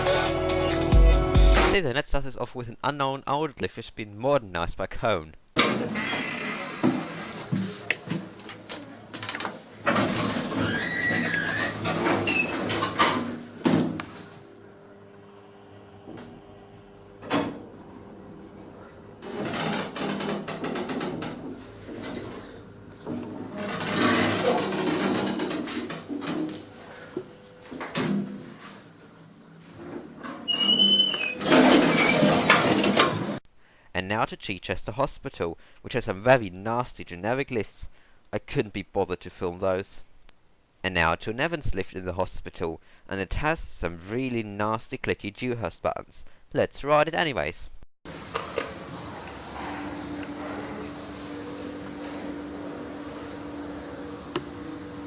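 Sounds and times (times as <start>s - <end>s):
lift doors sliding: 5.6s - 7.9s, 9.8s - 13.6s, 19.2s - 26.8s, 29.8s - 33.4s, 48.1s - 55.0s.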